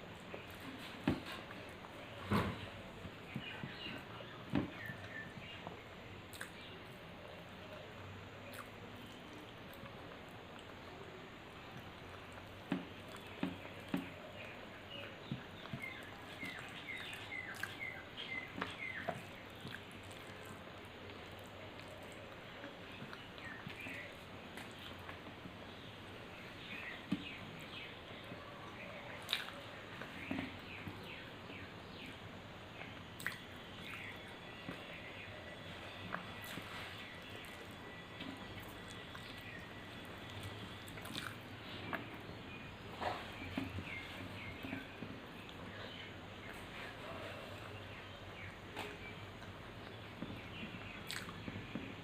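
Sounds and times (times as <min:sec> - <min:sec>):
wet chewing: 0:32.9 - 0:34.2, 0:35.9 - 0:42.2, 0:50.9 - 0:51.5
chewing with wet lip smacks: 0:40.2 - 0:41.4, 0:51.1 - 0:51.4.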